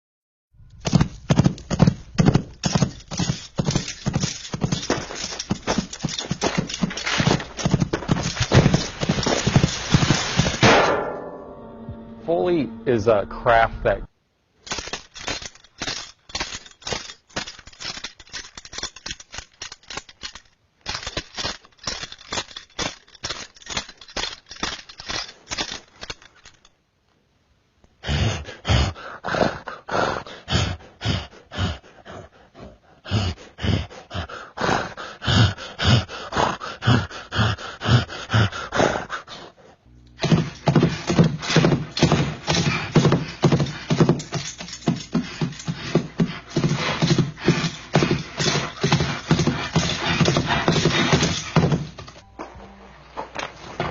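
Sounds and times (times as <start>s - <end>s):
low steady tone: 11.0s - 14.1s, 52.2s - 53.4s
heavy rhythmic thuds: 40.2s - 52.2s.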